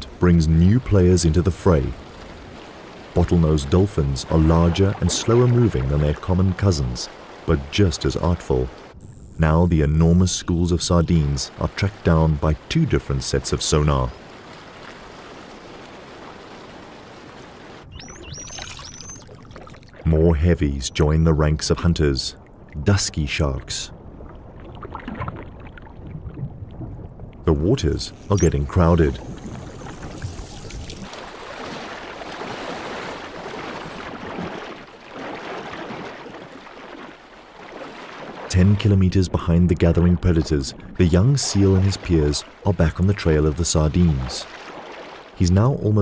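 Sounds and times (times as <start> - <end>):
sea water rushing and surging: 0.0 - 46.0
dolphins whistling: 17.8 - 19.4, 27.5 - 31.1.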